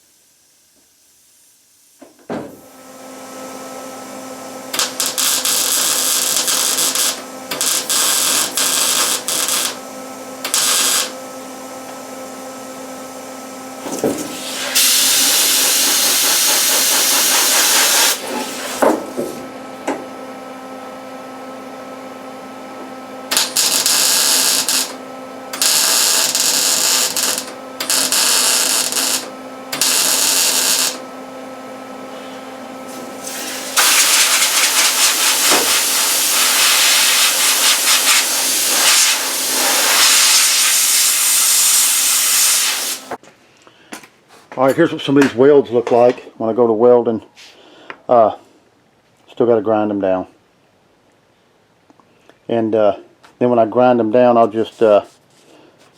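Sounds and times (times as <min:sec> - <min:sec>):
welder crackling hissing bursts: 0:04.5 - 0:09.8, 0:10.4 - 0:11.6, 0:13.8 - 0:19.4, 0:23.3 - 0:31.0, 0:32.9 - 0:43.2.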